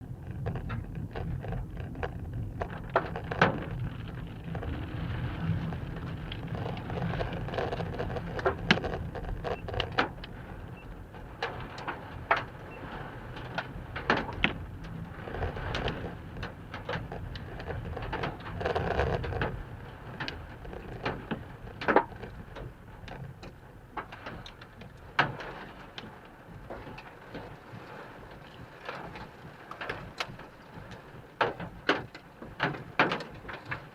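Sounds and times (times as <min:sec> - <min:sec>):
car rumbling on road: 0:00.0 - 0:23.9
rain tapping on windshield: 0:00.0 - 0:33.9.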